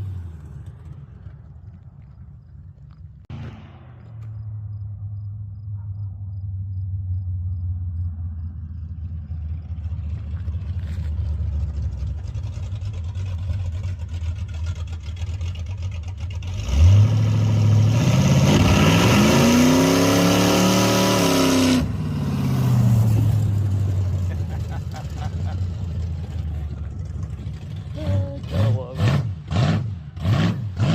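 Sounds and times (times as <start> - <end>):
drag car engine idling: 8.6 - 16.5, 23.9 - 28.5.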